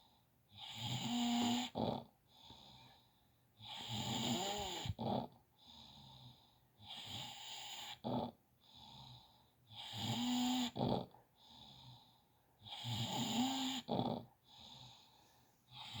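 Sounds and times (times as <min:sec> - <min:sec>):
loud rough snores: 0:00.6 - 0:02.8, 0:03.6 - 0:15.0, 0:15.8 - 0:16.0
soft breathing: 0:14.4 - 0:16.0.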